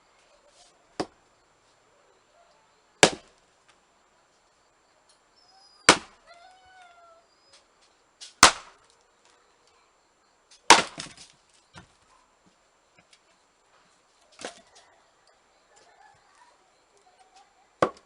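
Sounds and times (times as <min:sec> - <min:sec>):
axe chopping firewood: 0:01.0 - 0:01.2, 0:03.0 - 0:03.4, 0:05.9 - 0:06.2, 0:08.2 - 0:08.8, 0:10.5 - 0:11.9, 0:14.4 - 0:14.7, 0:17.8 - 0:18.0.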